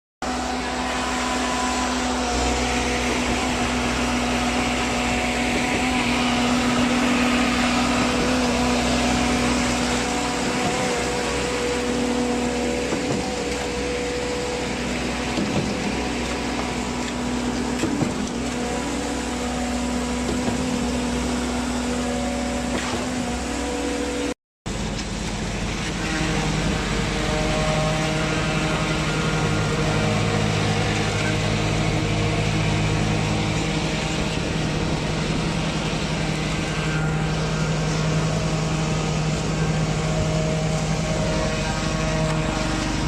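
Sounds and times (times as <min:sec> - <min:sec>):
concrete pump humming: 0:00.2 - 0:43.0.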